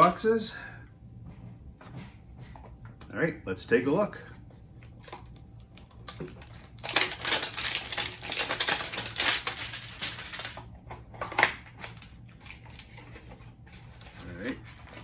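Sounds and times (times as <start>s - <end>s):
cardboard ripping and scraping: 6.5s - 9.3s.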